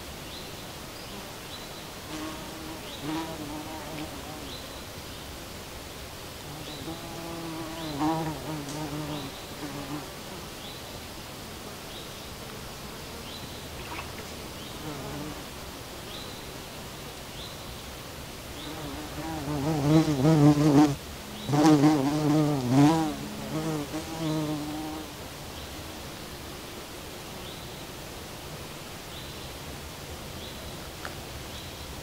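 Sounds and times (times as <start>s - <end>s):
steady background hiss: 0.0s - 32.0s
flying insect buzzing: 1.0s - 4.7s, 6.4s - 10.7s, 11.5s - 16.5s, 18.6s - 28.2s.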